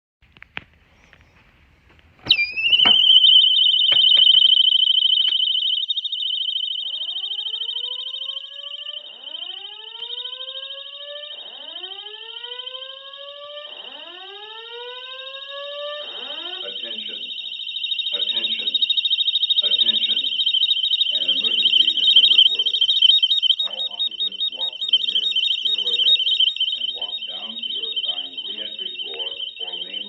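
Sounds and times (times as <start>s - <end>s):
clicks: 1.9s - 5.5s
fast-warbling alarm tone: 2.3s - 30.0s.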